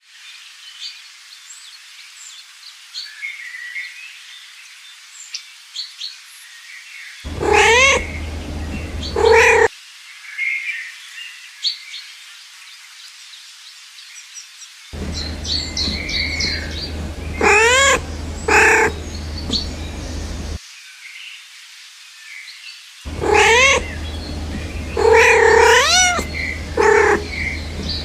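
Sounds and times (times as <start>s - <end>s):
cat meowing: 7.3s - 9.7s, 15.3s - 20.5s, 23.1s - 28.0s.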